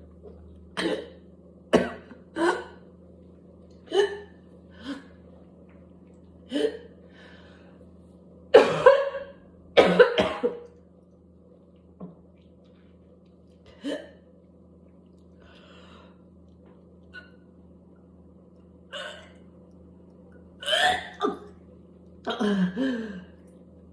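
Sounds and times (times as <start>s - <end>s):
person coughing hard: 0.8s - 2.8s, 8.6s - 10.6s
person breathing: 6.5s - 7.9s, 15.4s - 16.2s.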